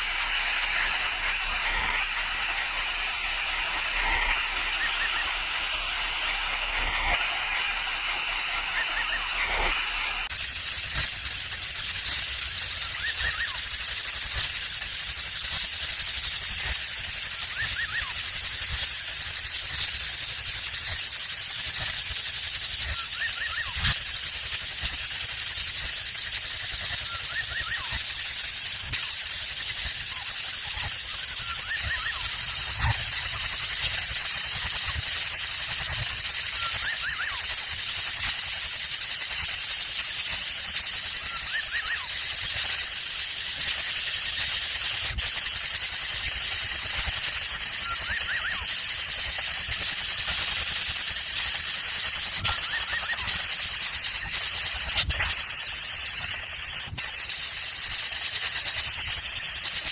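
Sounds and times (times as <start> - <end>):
steady high-pitched hiss: 0.0 - 59.9
faint short chirps: 4.4 - 5.9, 11.0 - 14.6, 25.7 - 38.4, 46.3 - 50.6.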